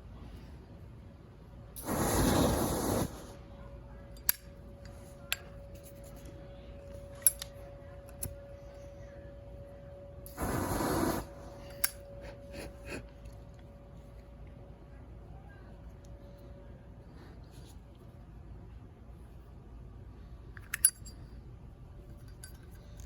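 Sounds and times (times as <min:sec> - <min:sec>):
aerosol can spraying: 0:01.8 - 0:03.4.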